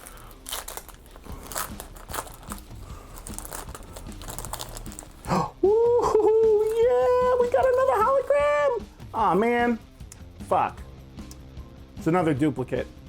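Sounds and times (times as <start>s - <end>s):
cards being handled: 0.0s - 5.3s, 6.3s - 8.3s
wrapper crinkling: 0.0s - 5.5s, 6.2s - 8.3s.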